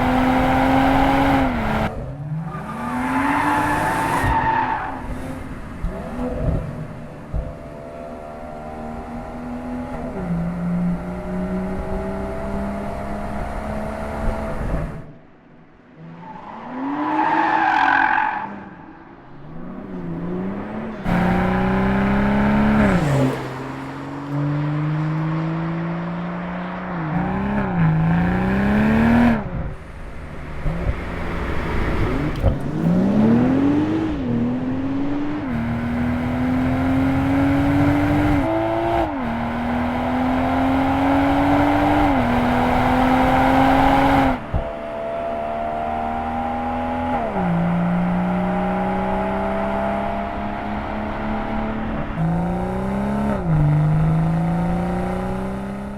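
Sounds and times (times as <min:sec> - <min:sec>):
car engine and exhaust accelerating: 0:00.0 - 0:15.3, 0:16.0 - 0:55.9.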